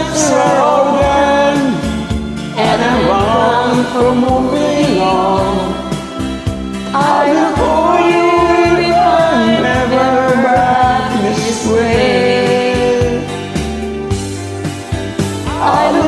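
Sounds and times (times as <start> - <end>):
wordless singing: 0.0 - 13.7, 15.4 - 16.0
karaoke backing track: 0.0 - 16.0.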